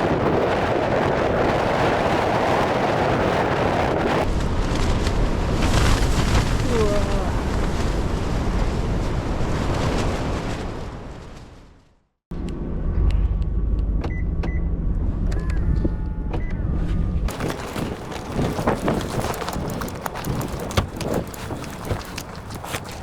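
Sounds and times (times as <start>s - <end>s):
wind on microphone: 0.0s - 11.4s, 17.2s - 23.0s
car engine rumble: 17.0s - 23.0s
crunches and knocks: 17.3s - 23.0s.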